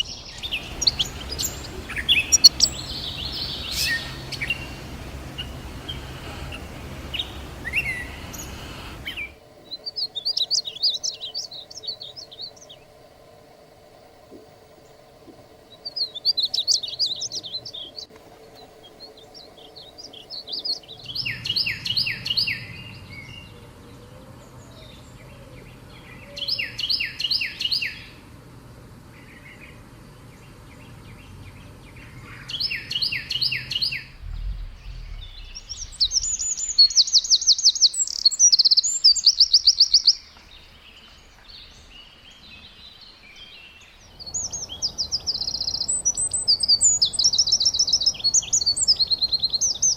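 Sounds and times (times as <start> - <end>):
fast high bird trill: 0.0 - 9.4
songbirds singing: 0.0 - 13.4, 14.2 - 49.9.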